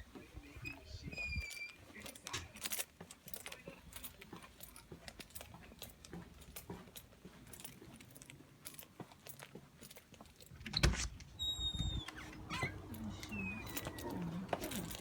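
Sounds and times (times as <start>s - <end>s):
clicks and rustles of handled objects: 0.0s - 15.0s
brief high tone: 11.7s - 14.4s.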